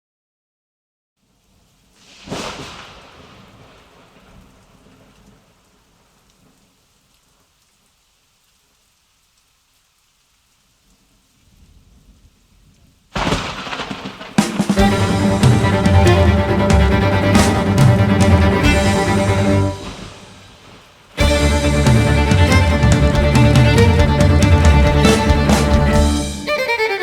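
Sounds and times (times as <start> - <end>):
thunder crack and rumble: 2.0 - 5.6, 13.1 - 26.0.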